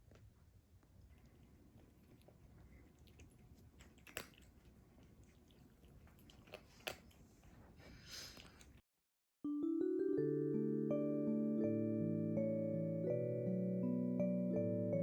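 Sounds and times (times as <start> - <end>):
cat chewing and crunching: 0.0 - 8.8.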